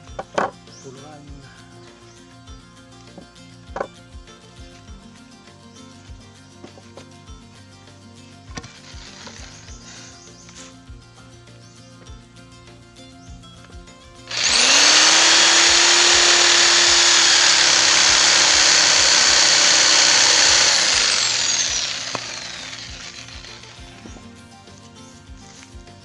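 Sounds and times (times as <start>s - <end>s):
background music with steady beat: 0.0s - 26.0s
electric jigsaw cutting wood: 14.3s - 24.0s.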